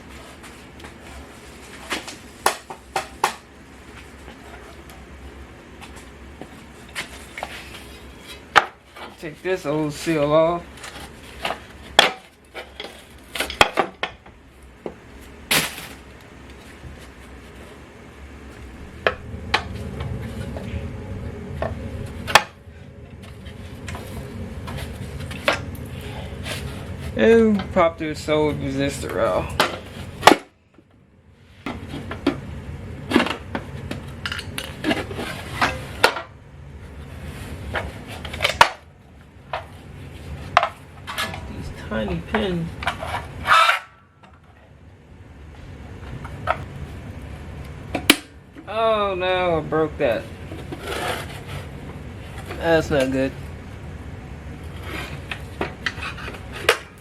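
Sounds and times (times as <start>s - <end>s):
scraping rasp: 50.6s - 51.7s.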